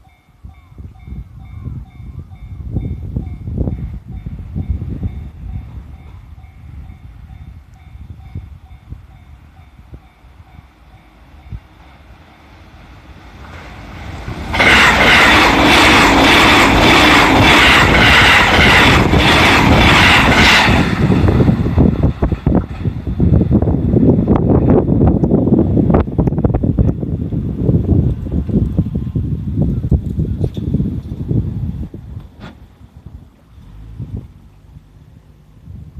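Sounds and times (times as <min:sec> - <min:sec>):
level crossing warning bell: 0:00.0 - 0:12.6
train rumbling with thumps: 0:00.0 - 0:35.9
wheels clattering on rails: 0:13.4 - 0:23.5.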